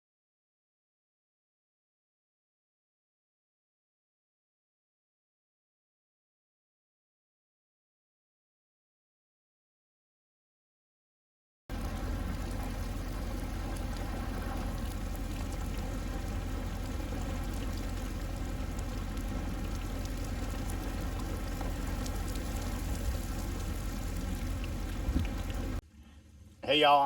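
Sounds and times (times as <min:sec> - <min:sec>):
steady rain falling: 0:11.7 - 0:25.8.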